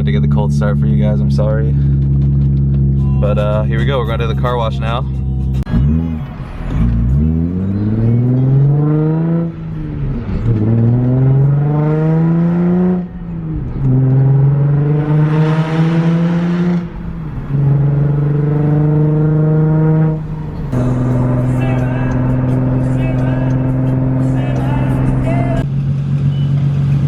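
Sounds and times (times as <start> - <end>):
car engine accelerating: 0.0 - 27.0.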